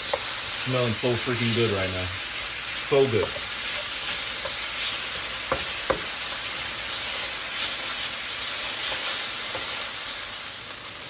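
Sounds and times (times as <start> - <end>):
chicken sizzling in a pan: 0.0 - 11.0.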